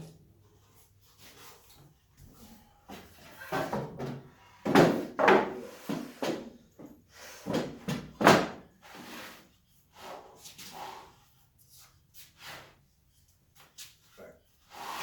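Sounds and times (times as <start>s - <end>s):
wooden boards knocking: 3.6s - 6.4s.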